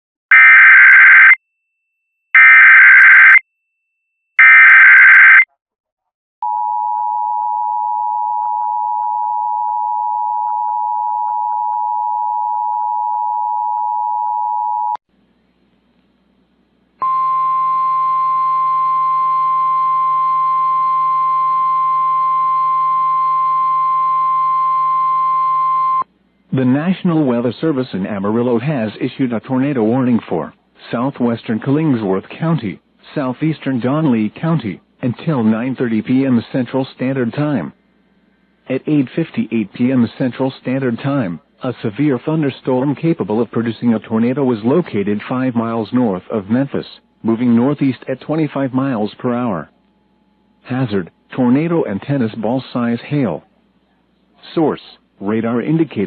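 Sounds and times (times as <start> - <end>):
steady warning alarm tone: 2.4 - 3.4, 4.4 - 5.4.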